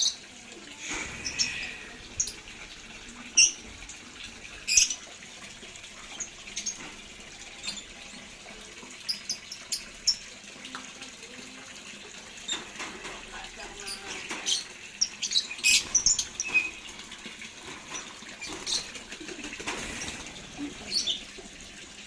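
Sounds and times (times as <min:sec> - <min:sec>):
lovebirds chirping: 0:00.8 - 0:03.8.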